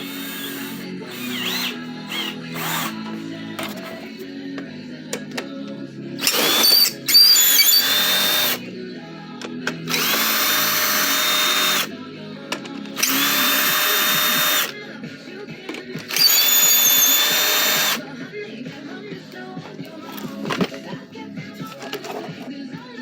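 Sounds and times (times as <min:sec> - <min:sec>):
power drill running: 0:00.0 - 0:03.2, 0:06.2 - 0:08.6, 0:09.9 - 0:11.9, 0:13.0 - 0:14.7, 0:16.1 - 0:18.0
background music: 0:00.0 - 0:23.0.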